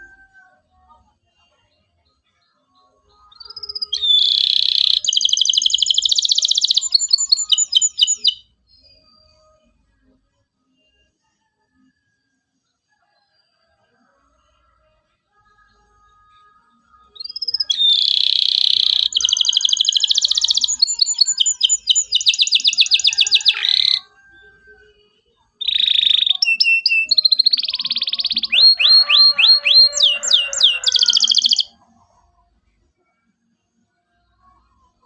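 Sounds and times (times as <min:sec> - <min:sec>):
canary singing trills: 0:03.2 - 0:09.5, 0:16.9 - 0:32.2.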